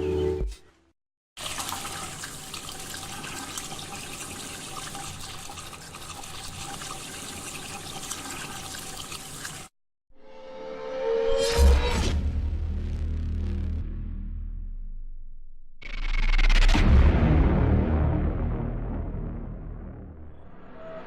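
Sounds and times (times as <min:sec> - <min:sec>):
tap water running into sink: 0:01.4 - 0:09.7.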